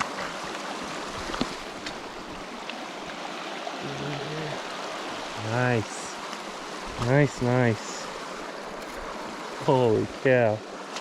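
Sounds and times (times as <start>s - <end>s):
small river flowing: 0.0s - 11.0s
person murmuring: 3.8s - 4.7s.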